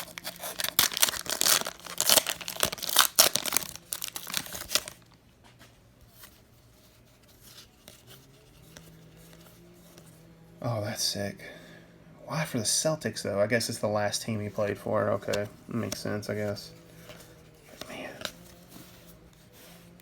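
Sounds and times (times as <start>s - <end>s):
plastic wrapper tearing and crinkling: 0.0s - 5.1s
cards clicking: 15.2s - 19.5s.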